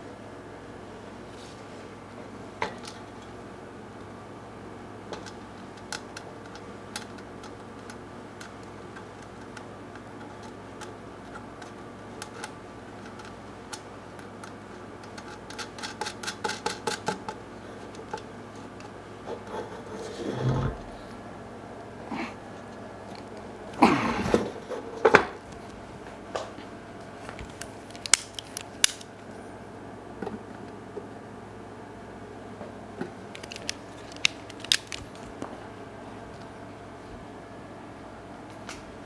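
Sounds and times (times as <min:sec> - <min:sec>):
steady electrical hum: 0:00.0 - 0:39.0
small clock parts clicking: 0:05.1 - 0:17.3.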